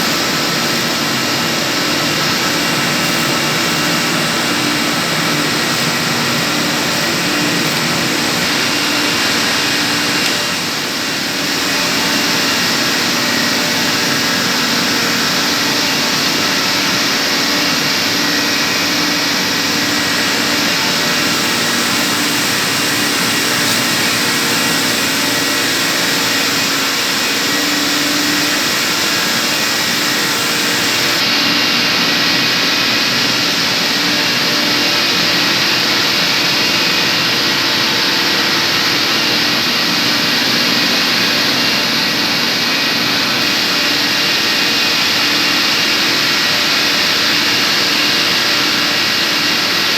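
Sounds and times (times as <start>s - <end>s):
steady machine tones: 0.0s - 31.3s
chiller machinery hiss: 0.0s - 49.9s.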